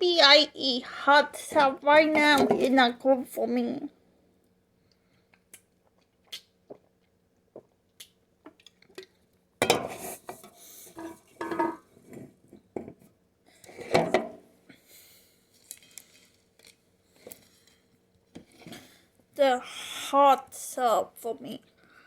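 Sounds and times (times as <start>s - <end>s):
cutlery clinking and scraping dish: 9.6s - 11.9s.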